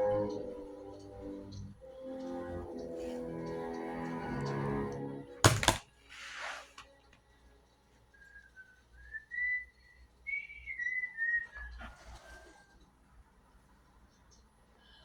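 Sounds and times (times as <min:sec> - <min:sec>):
sharp knock: 0:05.4 - 0:05.8
person whistling a tune: 0:08.2 - 0:11.8.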